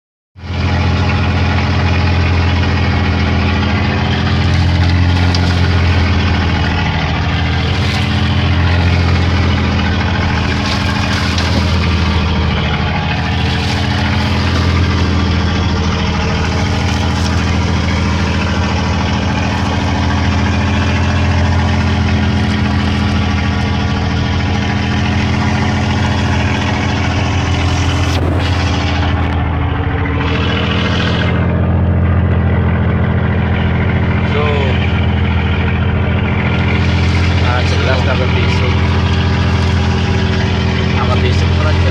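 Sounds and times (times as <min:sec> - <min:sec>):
boat engine running: 0:00.4 - 0:41.9.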